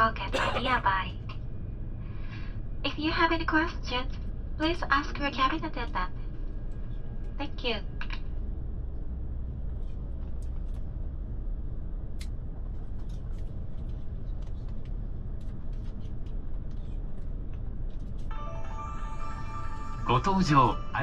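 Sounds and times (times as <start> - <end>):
airliner cabin low rumble: 0.0 - 18.3, 19.5 - 21.0
steady musical tones: 18.3 - 21.0.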